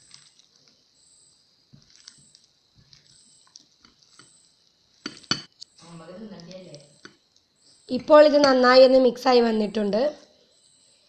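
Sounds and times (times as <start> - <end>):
wet squishing of chicken coating: 0.0 - 0.7, 1.8 - 4.3.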